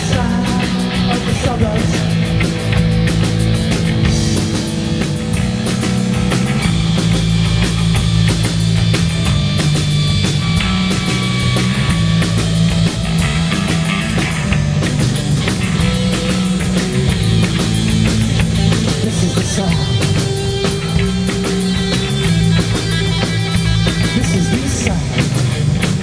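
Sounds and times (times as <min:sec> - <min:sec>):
punk rock band playing: 0:00.0 - 0:26.0.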